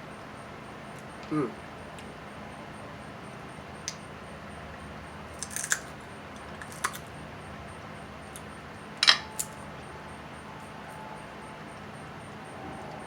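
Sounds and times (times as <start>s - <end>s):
crab shell cracking: 5.3s - 7.1s.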